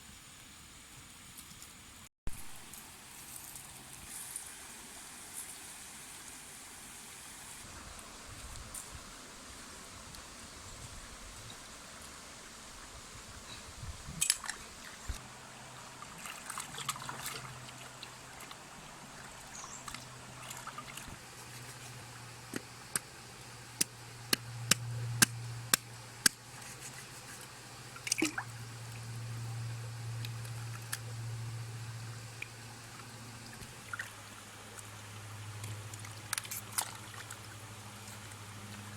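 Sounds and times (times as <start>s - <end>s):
low steady hum: 7.7s - 38.9s
water trickling and dripping: 14.2s - 38.9s.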